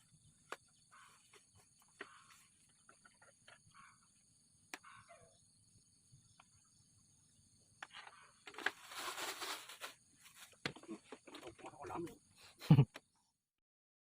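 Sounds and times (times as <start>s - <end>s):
insects droning: 0.0s - 13.0s
rustling noise: 8.5s - 11.2s.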